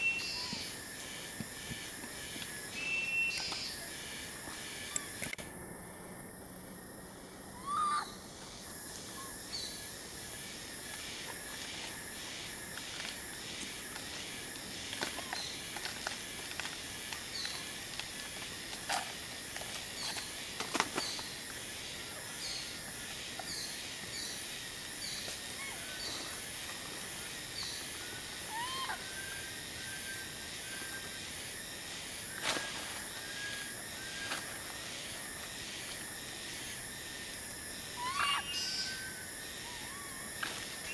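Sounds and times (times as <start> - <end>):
steady hiss: 0.0 - 40.9
rising squeaky animal calls: 7.5 - 8.2, 38.0 - 40.3.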